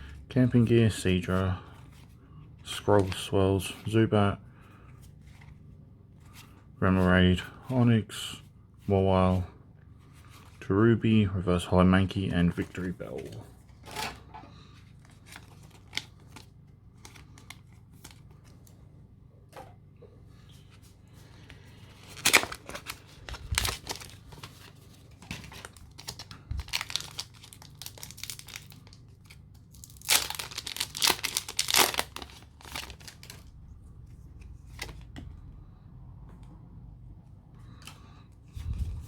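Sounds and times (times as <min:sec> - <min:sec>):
foil wrapper tearing and crinkling: 0:22.0 - 0:24.2, 0:25.6 - 0:33.5.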